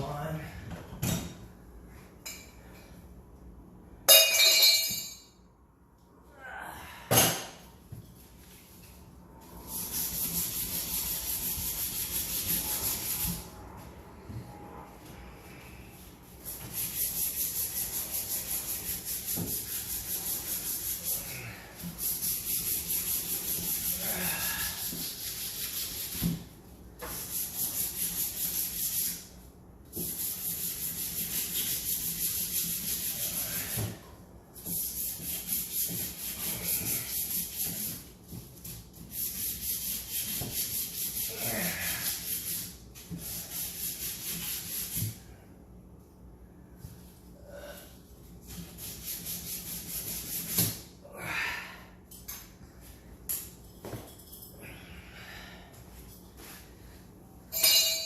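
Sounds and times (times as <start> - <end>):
abrasive scrubbing on pipe: 9.4 - 13.5, 16.4 - 34.0, 34.6 - 45.2, 48.5 - 50.8.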